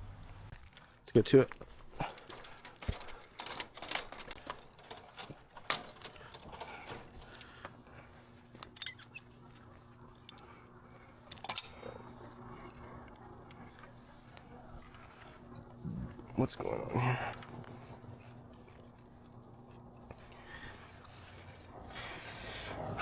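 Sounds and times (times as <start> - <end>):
small tools clicking and rattling: 0.5 - 9.4, 11.2 - 12.1.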